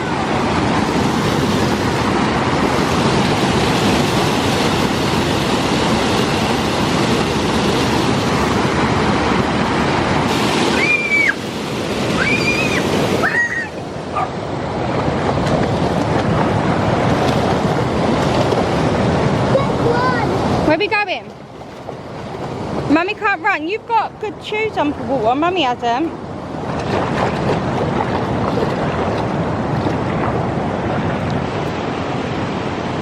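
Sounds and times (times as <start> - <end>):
water rushing over small waterfall: 0.0 - 23.4.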